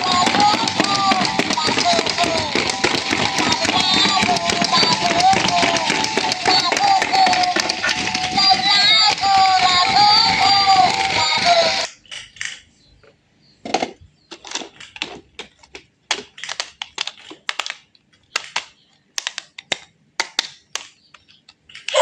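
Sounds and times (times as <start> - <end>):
music with synthetic singing voice: 0.0 - 11.9
small hard objects clicking: 0.0 - 12.6, 14.3 - 22.0.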